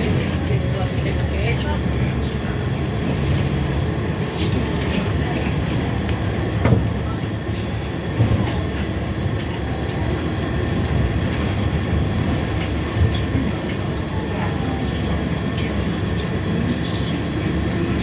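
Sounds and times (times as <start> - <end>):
interior rattles and clicks: 0.0 - 1.8
coach engine and road rumble: 0.0 - 18.0.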